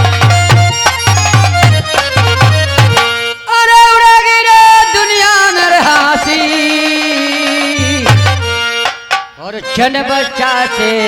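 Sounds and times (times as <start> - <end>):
hand drum beats: 0.0 - 3.2, 6.8 - 9.3.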